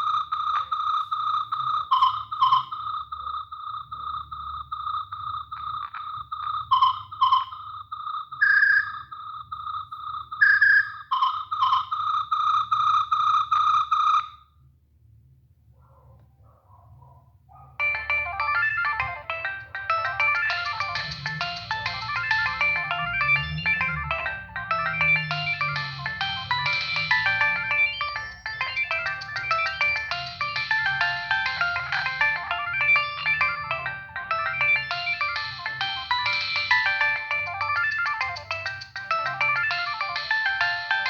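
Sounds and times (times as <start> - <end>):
polyphonic ringtone melody: 17.8 - 41.0.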